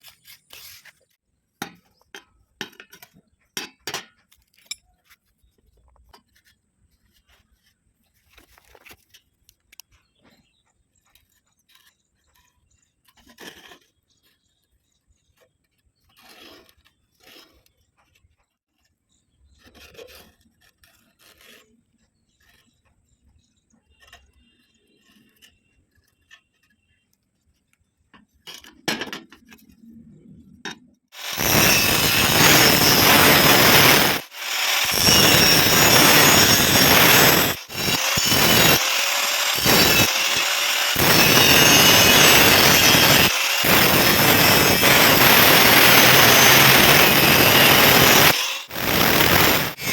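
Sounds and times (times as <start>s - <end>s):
metal scraping: 31.2s - 49.9s.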